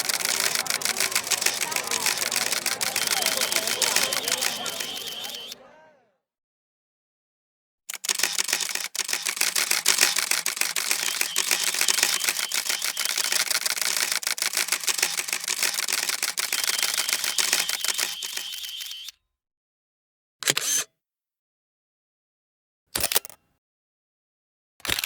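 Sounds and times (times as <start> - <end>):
camera shutter burst: 0.0 - 5.8, 8.1 - 19.1.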